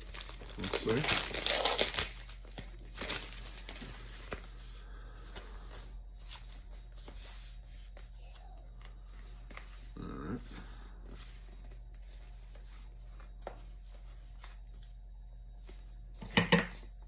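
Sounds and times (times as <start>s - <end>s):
packaging crinkling and tearing: 0.0s - 4.4s.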